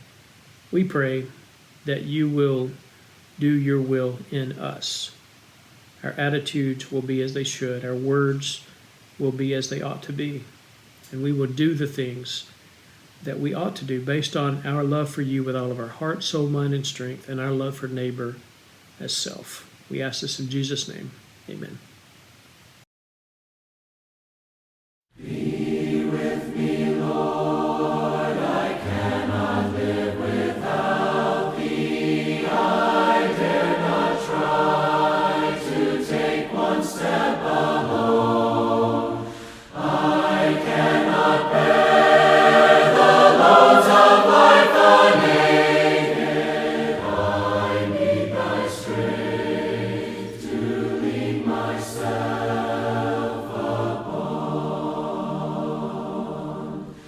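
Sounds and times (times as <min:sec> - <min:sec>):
choir singing a hymn: 0:25.2 - 0:57.0.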